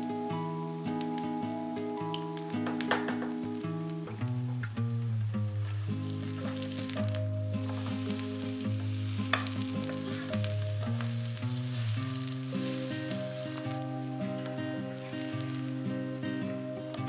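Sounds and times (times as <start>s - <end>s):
soft background music: 0.0s - 17.0s
batter sizzling in oil: 0.1s - 16.7s.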